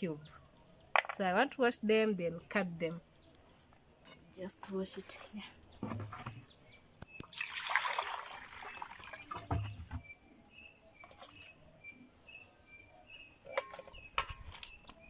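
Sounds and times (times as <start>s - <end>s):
water splashing: 7.2s - 9.5s.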